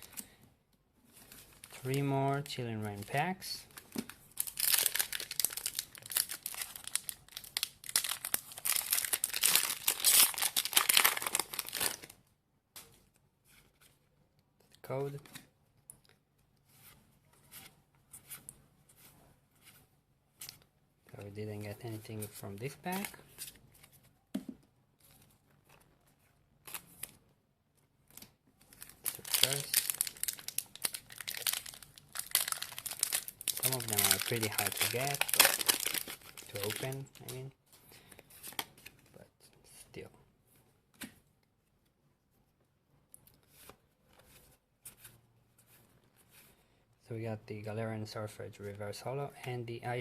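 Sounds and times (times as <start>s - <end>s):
foil wrapper crinkling and tearing: 4.4s - 12.1s, 28.7s - 37.4s.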